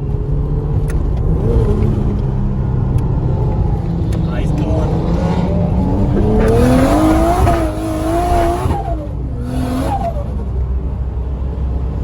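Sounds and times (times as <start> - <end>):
car engine revving: 0.5 - 11.0.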